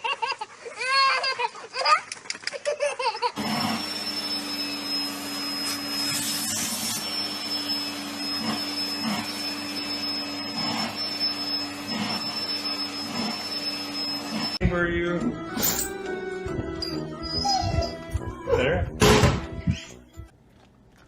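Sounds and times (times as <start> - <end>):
electric motor whining: 3.4 - 14.6.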